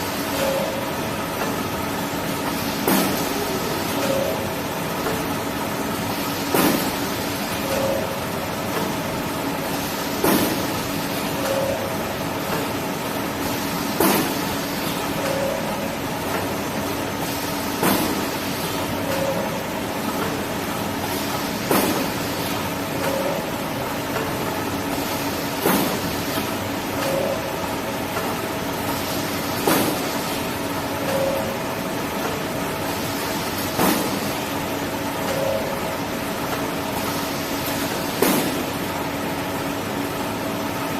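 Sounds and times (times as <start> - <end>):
short machine tone: 0.0 - 1.0, 3.4 - 4.7, 7.6 - 8.4, 11.4 - 12.2, 15.1 - 16.0, 19.0 - 19.7, 23.0 - 23.8, 27.0 - 27.7, 31.0 - 31.8, 35.2 - 36.2
sharp machine clack: 0.0 - 5.4, 6.0 - 8.9, 9.7 - 12.7, 13.4 - 16.5, 17.2 - 20.4, 21.0 - 31.6.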